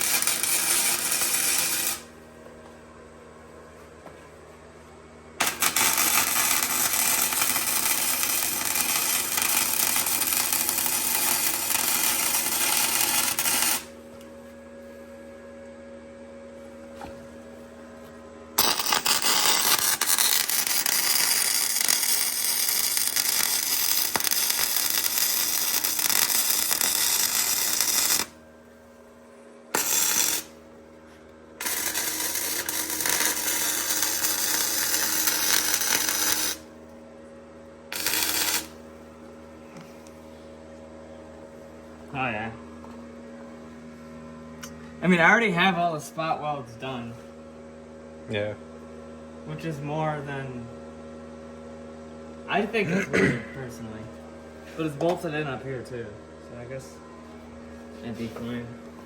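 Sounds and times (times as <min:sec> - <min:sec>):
welder crackle: 0:00.0 - 0:02.2, 0:05.4 - 0:14.0, 0:18.6 - 0:28.4, 0:29.7 - 0:30.6, 0:31.6 - 0:36.7, 0:37.9 - 0:38.8
low machine hum: 0:00.0 - 0:59.0.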